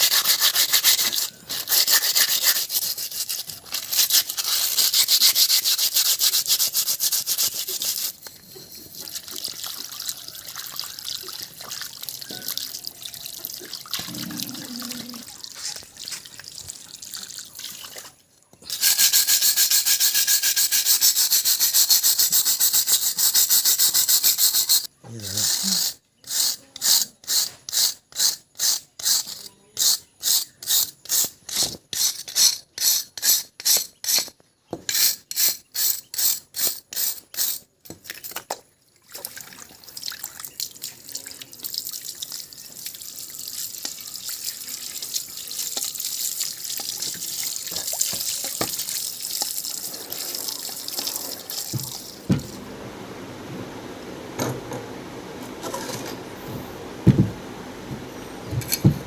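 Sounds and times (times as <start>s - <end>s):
running water hiss: 39.2s - 52.8s.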